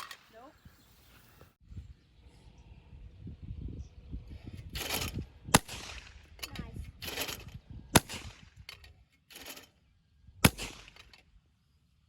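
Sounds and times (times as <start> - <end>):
shotgun shots: 4.8 - 6.3, 7.0 - 8.6, 10.4 - 11.1.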